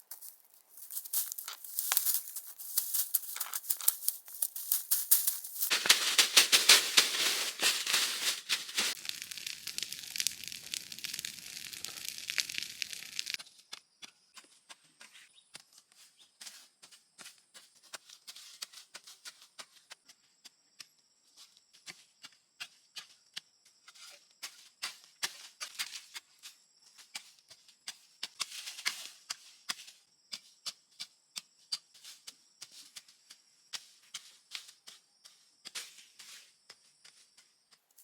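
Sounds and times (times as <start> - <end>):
sharp clicks and rustles: 0.0 - 13.4.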